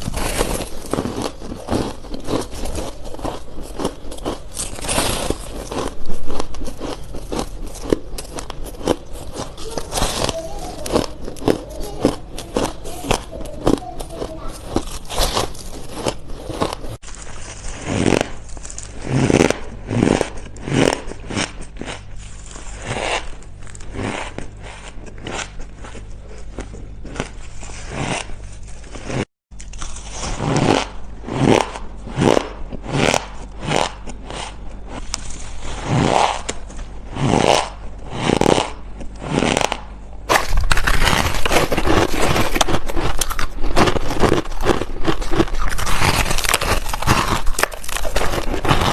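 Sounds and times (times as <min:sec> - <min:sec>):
ice being crunched by teeth: 0:00.0 - 0:24.3, 0:27.0 - 0:34.1, 0:38.3 - 0:48.9.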